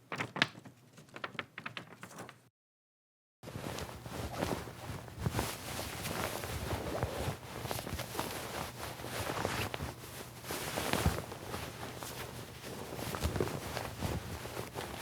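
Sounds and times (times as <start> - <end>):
small clicks and rustles: 3.6 - 15.0.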